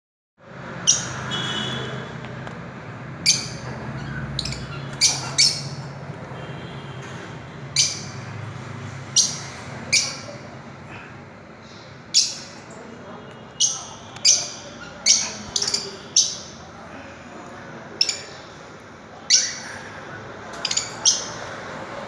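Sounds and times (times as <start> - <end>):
lovebirds squawking: 3.2 - 6.1, 13.5 - 16.8.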